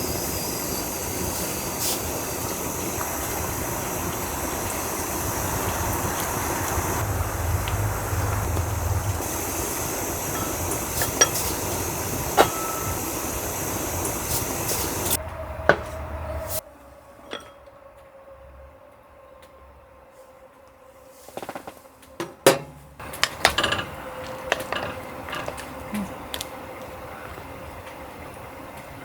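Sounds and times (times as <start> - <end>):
steady rushing noise: 0.0 - 16.7
faint steady tone: 0.0 - 17.6.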